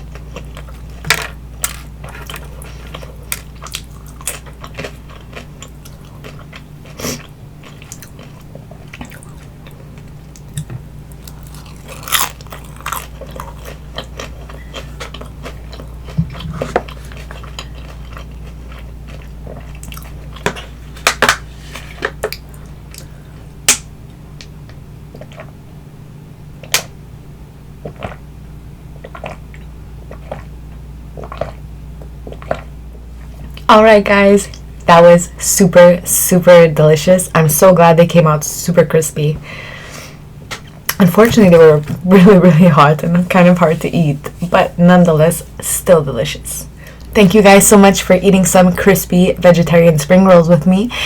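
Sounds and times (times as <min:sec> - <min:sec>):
crunchy chewing: 0:00.0 - 0:23.1, 0:27.8 - 0:28.3, 0:29.0 - 0:33.7
steady low hum: 0:00.0 - 0:51.0
wet mouth sounds: 0:29.0 - 0:30.5.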